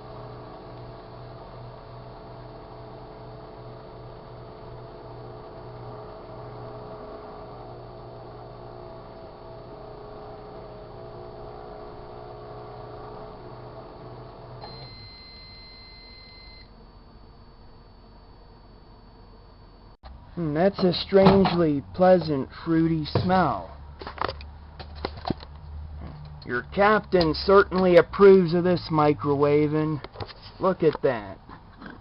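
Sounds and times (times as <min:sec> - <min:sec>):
microwave oven humming: 0:00.0 - 0:30.1
high microwave beep: 0:14.6 - 0:20.0.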